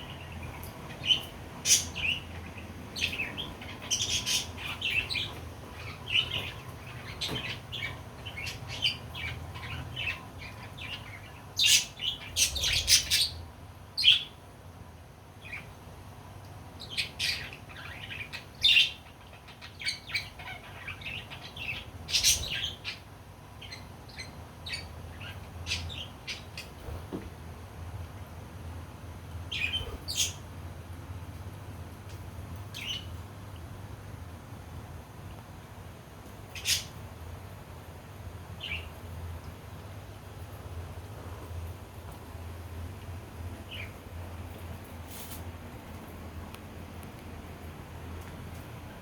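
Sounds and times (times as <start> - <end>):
budgerigars chirping: 0.0 - 13.4, 16.8 - 23.0, 36.5 - 37.0.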